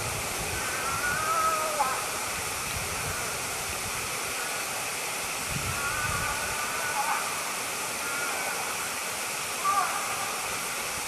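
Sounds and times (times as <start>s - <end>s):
steady rushing noise: 0.0s - 11.0s
faint high drawn-out call: 9.6s - 10.4s.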